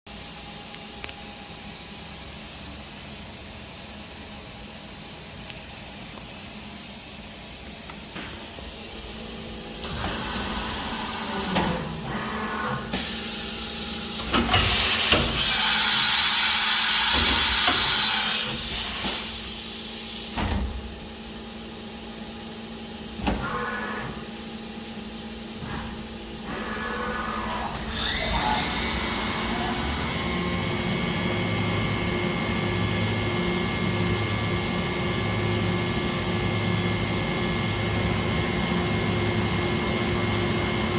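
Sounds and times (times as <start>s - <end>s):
hissing bursts of air: 12.9s - 20.4s.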